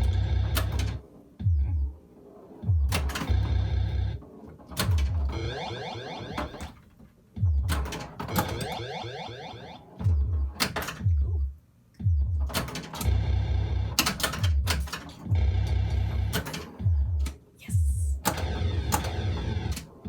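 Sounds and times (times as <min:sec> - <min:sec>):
pinball flipper thumps and clacks: 0:00.0 - 0:01.0, 0:02.6 - 0:05.6, 0:06.2 - 0:09.0, 0:10.0 - 0:11.4, 0:12.1 - 0:13.3, 0:13.9 - 0:17.4, 0:18.2 - 0:20.0
electronic sliding tones: 0:05.3 - 0:06.7, 0:08.3 - 0:10.0.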